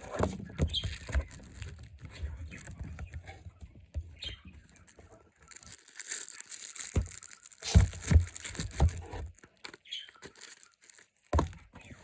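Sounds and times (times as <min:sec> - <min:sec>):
packaging crinkling: 0:00.0 - 0:02.9, 0:04.2 - 0:12.0.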